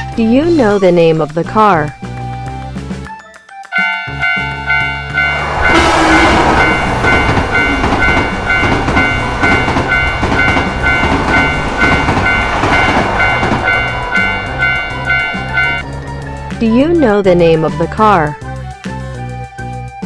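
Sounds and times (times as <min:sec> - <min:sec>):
railroad crossing bell ringing: 0:03.7 - 0:18.2
train rushing past: 0:03.8 - 0:18.3.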